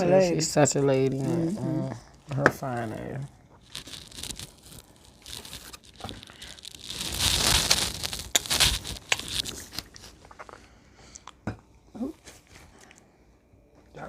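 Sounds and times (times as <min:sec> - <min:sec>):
food wrapping crinkling and tearing: 0:01.2 - 0:11.3, 0:12.1 - 0:13.1.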